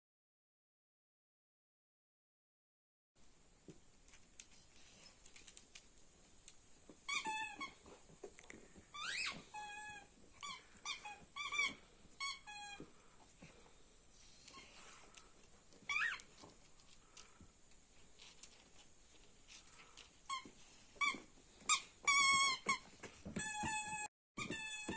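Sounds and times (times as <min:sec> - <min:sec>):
rubber ball squeaking: 0:07.0 - 0:07.9, 0:08.9 - 0:12.9, 0:15.8 - 0:16.3, 0:20.3 - 0:24.9.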